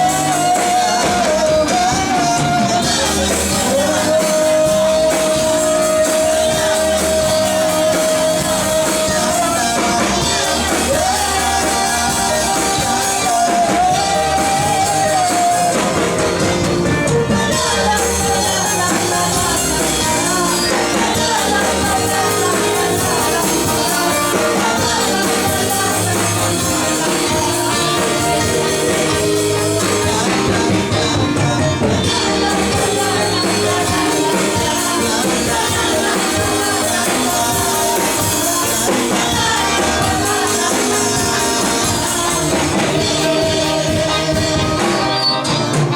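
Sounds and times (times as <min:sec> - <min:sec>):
band playing worship music: 0:00.0 - 0:45.9
people singing: 0:00.0 - 0:45.9.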